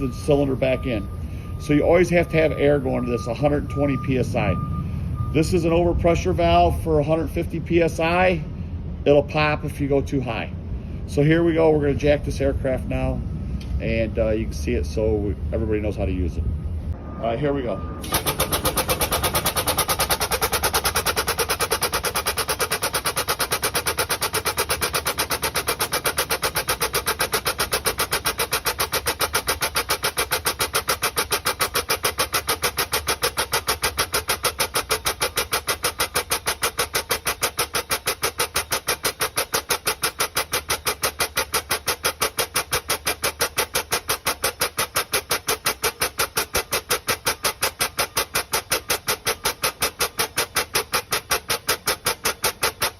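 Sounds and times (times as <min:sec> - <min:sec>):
pneumatic pump air puffs: 0:00.0 - 0:05.8, 0:18.0 - 0:52.9.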